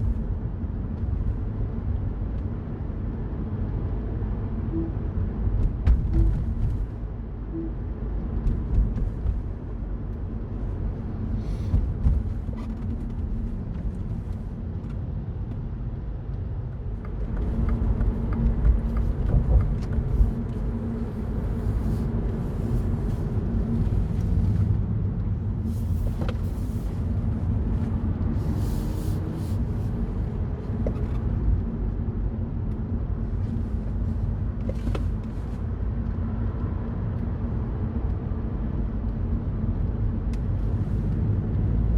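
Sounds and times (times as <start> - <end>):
car engine and road noise: 0.0 - 41.9.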